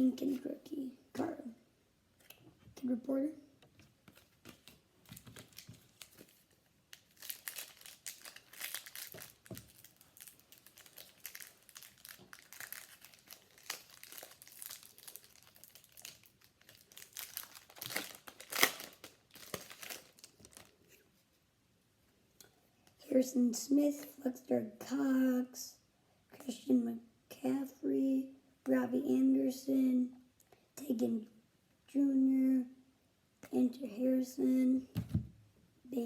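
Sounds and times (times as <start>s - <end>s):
card pack wrapper crinkling and tearing: 4.2s - 20.9s.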